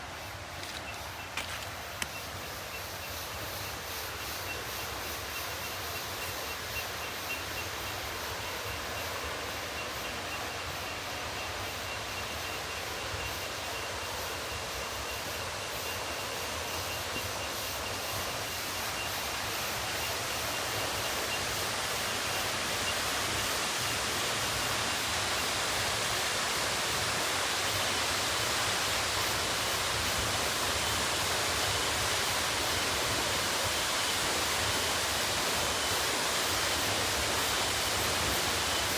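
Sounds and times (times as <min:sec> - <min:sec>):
waterfall rushing: 0:19.4 - 0:38.9.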